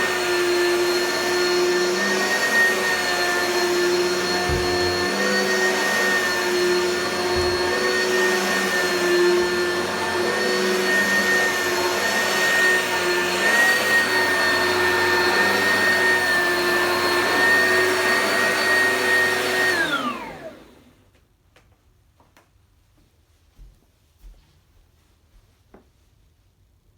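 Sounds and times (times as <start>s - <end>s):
vacuum cleaner motor whine: 0.0s - 21.1s.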